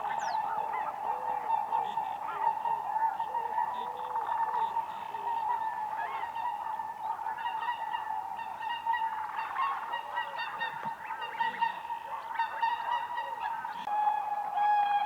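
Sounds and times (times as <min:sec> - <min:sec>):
swans honking: 0:07.4 - 0:15.0.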